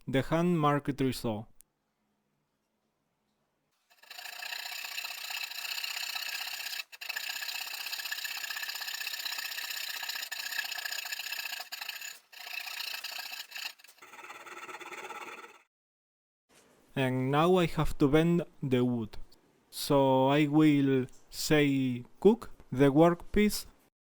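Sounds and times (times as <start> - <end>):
electric jigsaw cutting wood: 4.0 - 15.6.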